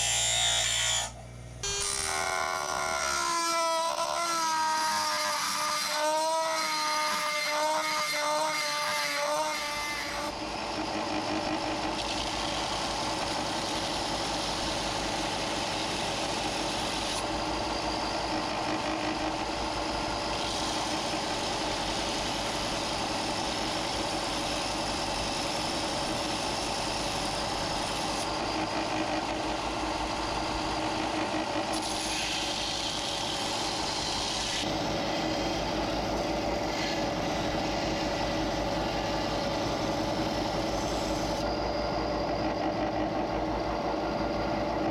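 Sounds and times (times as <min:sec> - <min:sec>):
electric machine motor humming: 0:09.6 - 0:44.9.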